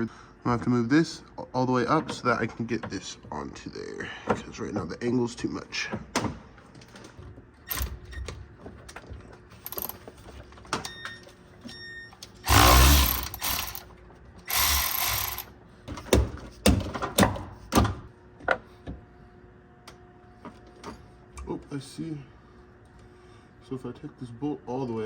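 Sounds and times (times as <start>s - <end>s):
impact wrench bursts: 7.7s - 8.0s, 9.6s - 10.0s, 12.4s - 13.9s, 14.5s - 15.5s
metallic clicks and knocks of tools: 9.7s - 10.0s.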